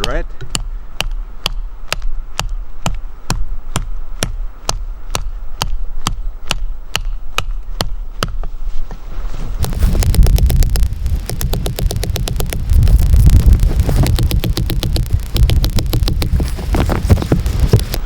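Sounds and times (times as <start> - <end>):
loud low rumble: 9.6 - 18.0.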